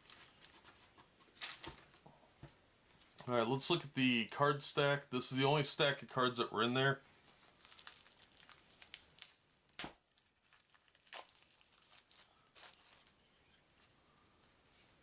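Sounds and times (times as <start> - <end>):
wrapping being torn and crinkled: 1.4 - 1.8, 7.3 - 14.0.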